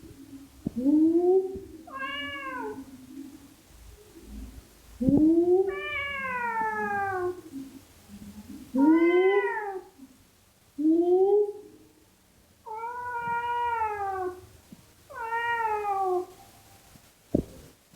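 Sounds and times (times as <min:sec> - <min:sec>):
cat meowing: 0:01.9 - 0:02.9, 0:05.7 - 0:07.4, 0:08.8 - 0:09.9, 0:12.7 - 0:14.5, 0:15.1 - 0:16.4.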